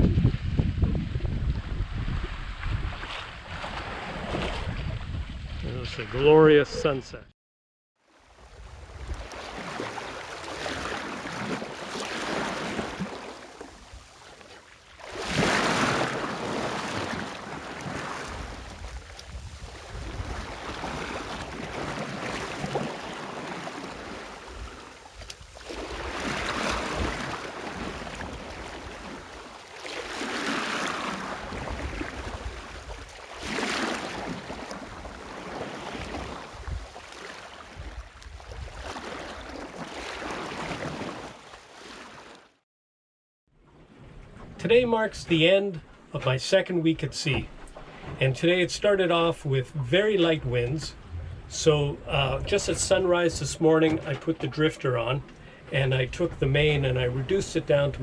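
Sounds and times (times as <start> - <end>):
water rushing along boat hull: 0.0 - 7.2, 8.0 - 42.6, 43.6 - 58.0
wind on microphone: 0.0 - 7.3, 15.3 - 29.4, 30.1 - 37.0, 37.7 - 39.6, 50.7 - 53.6.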